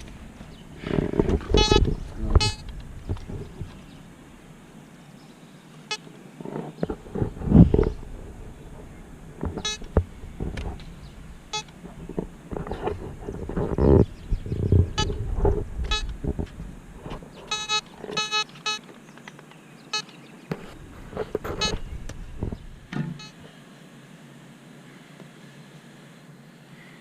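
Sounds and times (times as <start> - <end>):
metal detector beeping: 0.4 - 3.9, 6.9 - 12.8, 14.8 - 16.2, 17.5 - 18.8, 20.0 - 23.5.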